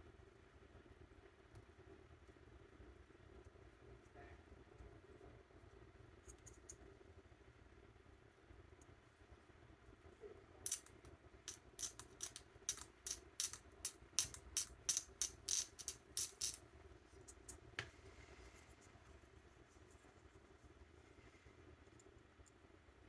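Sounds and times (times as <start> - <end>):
faint steady hum: 0.0 - 23.0
hand tool scratching plastic: 10.7 - 10.9, 11.5 - 16.6.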